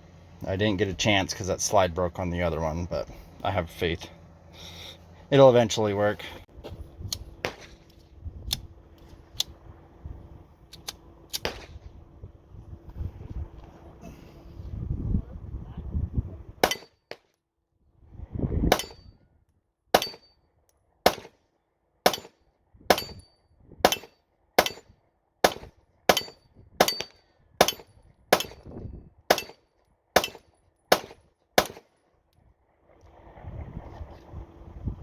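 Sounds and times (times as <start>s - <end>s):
pistol shots: 16.6s - 17.0s, 18.7s - 19.0s, 20.0s - 20.2s, 21.0s - 21.4s, 22.0s - 23.2s, 23.8s - 28.7s, 29.3s - 29.6s, 30.2s - 31.9s.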